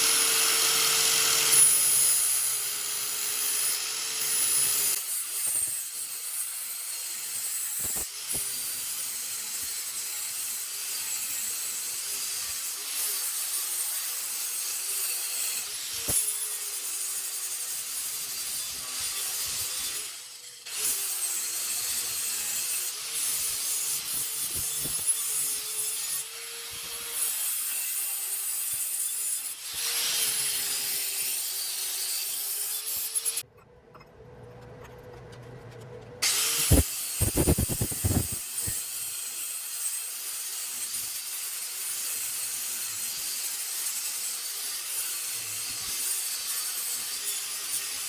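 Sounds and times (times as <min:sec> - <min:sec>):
abrasive scraping on a hatchet: 0:31.2 - 0:38.8.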